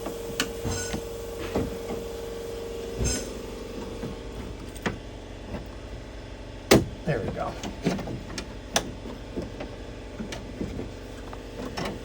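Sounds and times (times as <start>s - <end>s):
steady hum: 0.0s - 12.0s
loud metallic clank: 3.0s - 3.4s.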